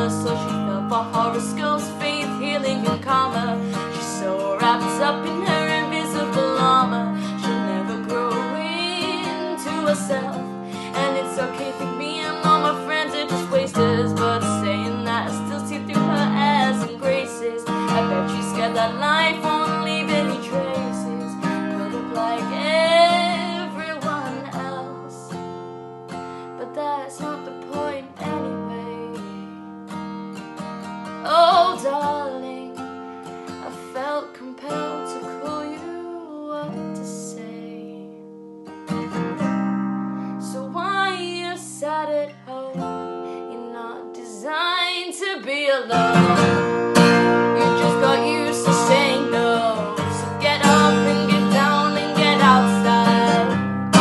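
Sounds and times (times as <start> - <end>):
person singing: 0.0 - 25.3, 47.6 - 53.6
strummed acoustic guitar: 0.0 - 54.0.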